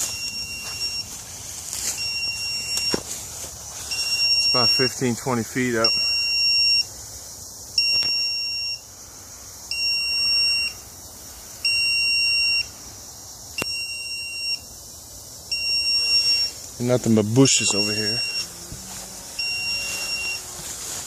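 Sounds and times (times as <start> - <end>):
high-pitched locator beeps: 0.0 - 1.2, 1.8 - 3.0, 3.9 - 5.0, 5.8 - 6.9, 7.8 - 8.8, 9.7 - 10.8, 11.7 - 12.7, 13.6 - 14.7, 15.5 - 16.5, 17.4 - 18.5, 19.4 - 20.5.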